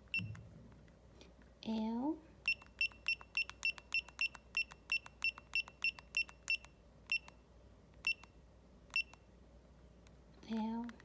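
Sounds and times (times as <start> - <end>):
short high beeps with clicks: 2.5 - 7.3, 8.0 - 8.3, 9.0 - 9.2.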